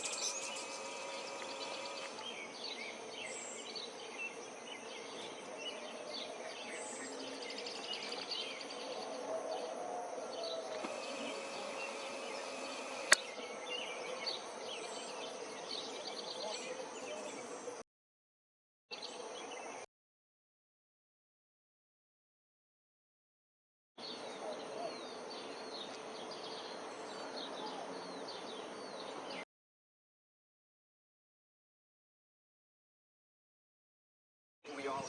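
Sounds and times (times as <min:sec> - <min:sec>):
faint buzz: 0:00.0 - 0:02.4, 0:10.7 - 0:15.2
hummingbirds chirping: 0:00.0 - 0:09.2, 0:10.3 - 0:17.8
outdoor background: 0:00.0 - 0:17.8, 0:18.9 - 0:19.9, 0:24.0 - 0:29.5, 0:34.6 - 0:35.0
sharp click: 0:10.8 - 0:13.3.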